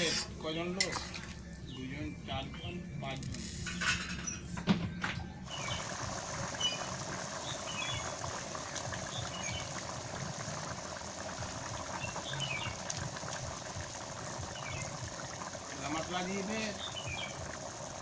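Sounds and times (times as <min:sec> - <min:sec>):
curry bubbling and sizzling: 0:05.4 - 0:18.0.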